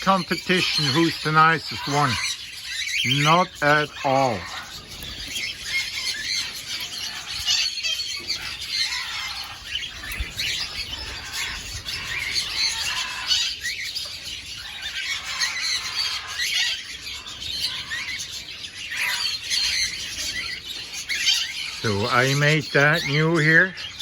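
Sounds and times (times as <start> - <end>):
cockatiels chirping and squawking: 0.0 - 24.0.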